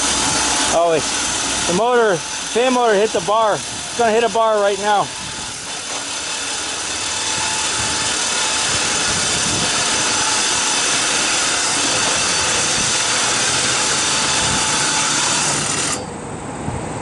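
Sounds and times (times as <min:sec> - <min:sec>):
loud even hiss: 0:00.0 - 0:16.0
hoist motor running: 0:00.0 - 0:16.2.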